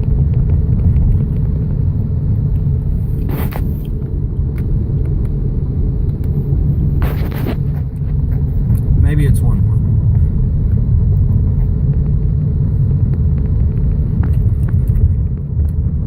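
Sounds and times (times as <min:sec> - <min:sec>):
car engine and road rumble: 0:00.0 - 0:16.0
short rushing noises: 0:03.0 - 0:04.0, 0:07.0 - 0:07.9.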